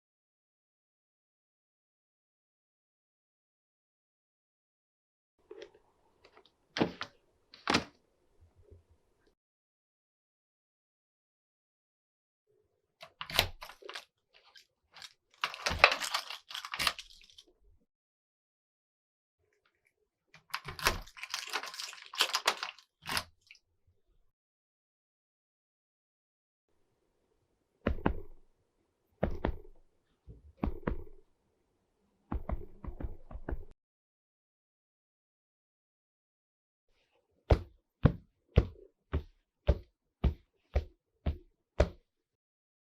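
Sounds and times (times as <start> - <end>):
foley crunching and crackling: 13.5 - 17.5, 20.5 - 23.6.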